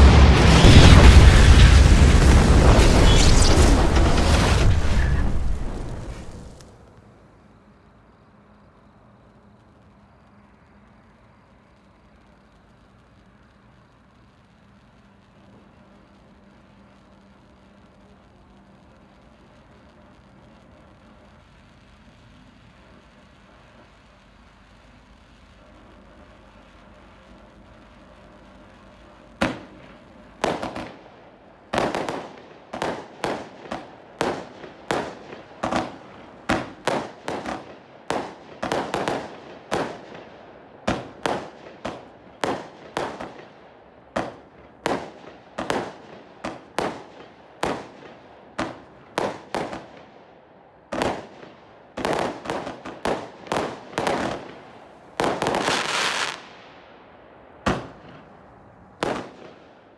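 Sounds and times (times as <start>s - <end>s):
fireworks cake bangs: 0.0s - 6.7s, 26.9s - 31.0s, 50.9s - 56.5s, 57.6s - 58.4s.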